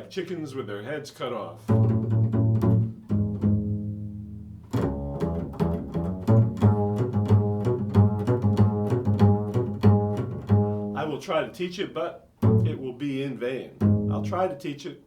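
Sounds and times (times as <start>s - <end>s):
low improvised instrumental music: 1.6s - 11.5s, 12.2s - 13.0s, 13.7s - 14.7s.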